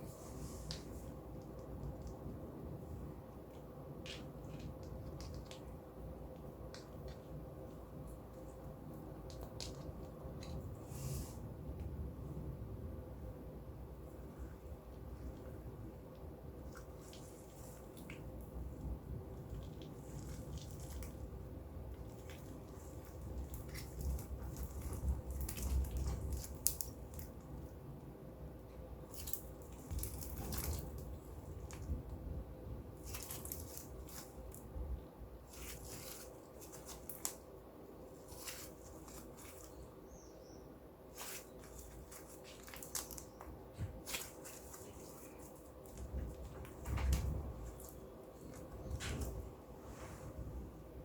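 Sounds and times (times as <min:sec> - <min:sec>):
slime kneaded by hand: 0:13.6 - 0:40.2, 0:41.0 - 0:51.0.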